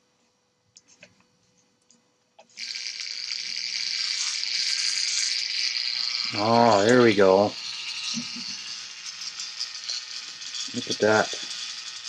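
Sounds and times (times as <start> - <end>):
harsh electrical buzz and hiss: 2.4 - 12.0.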